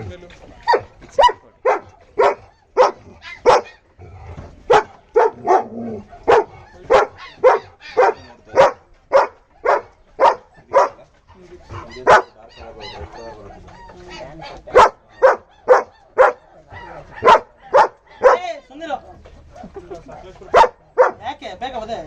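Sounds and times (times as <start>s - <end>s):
dog barking: 0.7s - 3.8s, 4.7s - 11.0s, 11.9s - 18.5s, 20.5s - 21.3s.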